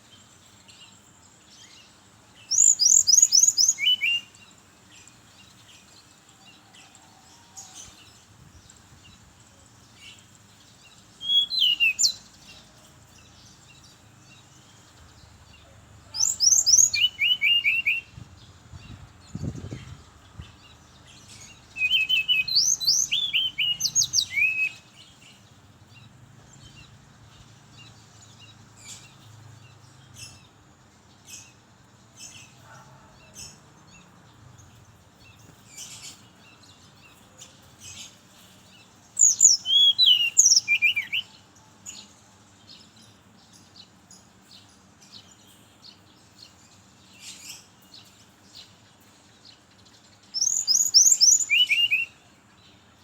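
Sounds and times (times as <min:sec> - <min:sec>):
faint bird chirps: 0:00.0 - 0:53.0
bird singing whistled notes: 0:00.8 - 0:04.4, 0:10.9 - 0:12.7, 0:16.1 - 0:25.2, 0:39.1 - 0:42.1, 0:49.8 - 0:52.3.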